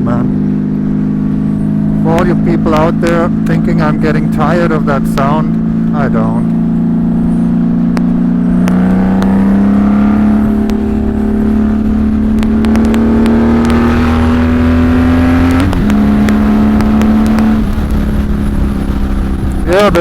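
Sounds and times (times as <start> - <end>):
motorcycle engine at speed: 0.0 - 20.0
wind noise: 6.5 - 20.0.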